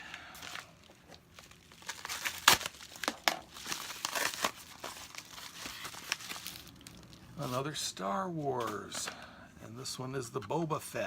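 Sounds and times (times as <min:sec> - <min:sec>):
packaging tearing and crinkling: 0:00.4 - 0:07.6.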